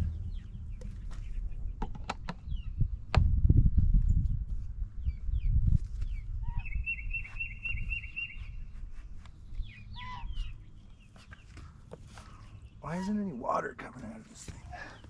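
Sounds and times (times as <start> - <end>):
birds chirping and trilling: 0.0 - 3.1, 5.0 - 15.0
low rumble: 0.0 - 6.4.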